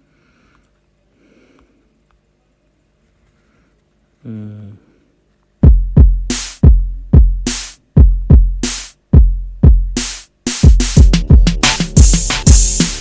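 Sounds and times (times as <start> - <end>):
drum-machine beat music: 5.6 - 13.0.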